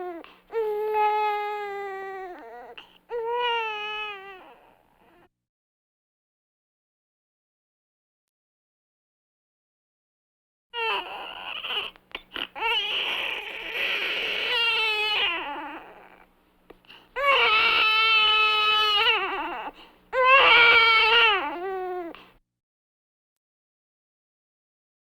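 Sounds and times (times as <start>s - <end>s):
baby crying: 0.0s - 5.2s, 10.8s - 16.3s, 17.2s - 22.3s.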